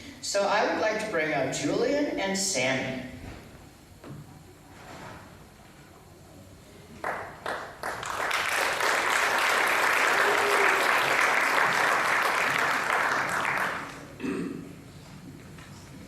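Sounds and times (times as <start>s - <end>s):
audience applauding: 7.0s - 14.2s.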